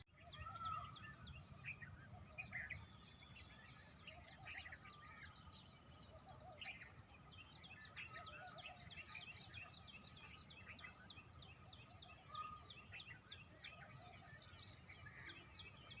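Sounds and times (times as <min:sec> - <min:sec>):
birds chirping: 0:00.0 - 0:16.0.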